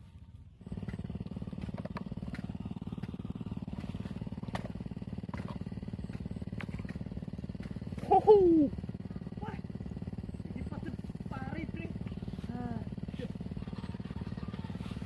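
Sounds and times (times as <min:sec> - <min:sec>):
small engine puttering: 0:00.0 - 0:15.0.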